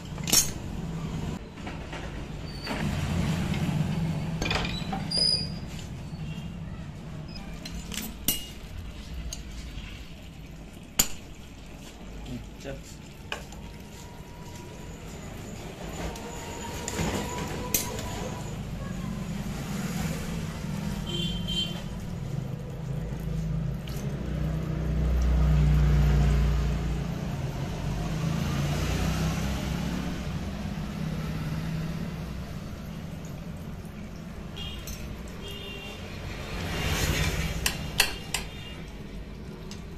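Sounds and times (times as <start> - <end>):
metal tools clinking: 0.0 - 0.7, 7.3 - 8.6.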